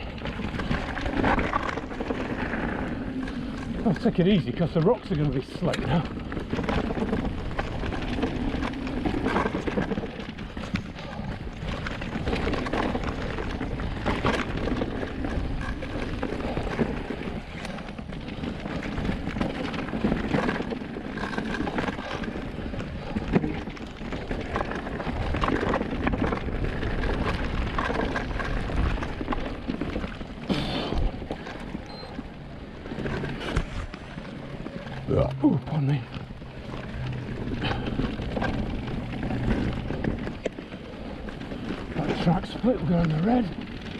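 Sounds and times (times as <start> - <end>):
bike knocks and rattles: 0.0 - 31.8
bike tyres over rock: 0.0 - 43.9.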